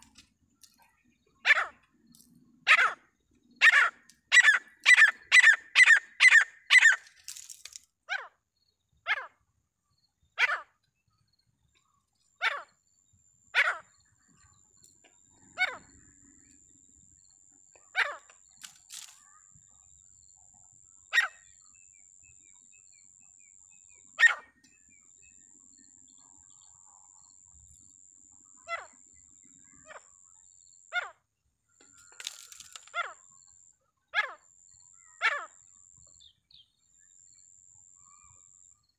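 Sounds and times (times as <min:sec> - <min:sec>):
francolin calling: 0:00.0 - 0:07.4.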